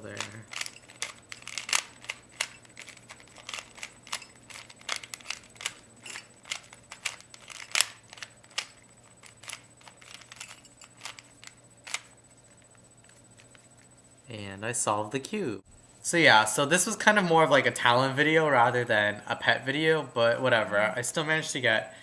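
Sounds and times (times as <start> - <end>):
puzzle cube plastic clicks: 0.0 - 12.1.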